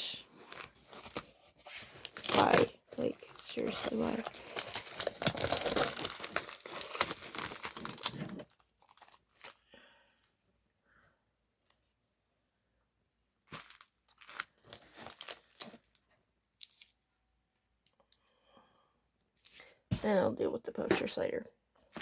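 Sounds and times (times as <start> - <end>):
packaging tearing and crinkling: 0.5 - 9.6, 13.5 - 16.0.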